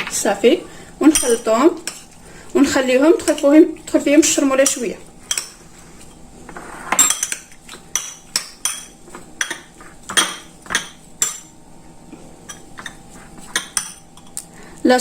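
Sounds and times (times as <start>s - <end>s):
metal spoon clinking against bowl: 1.1s - 2.0s, 6.9s - 11.5s.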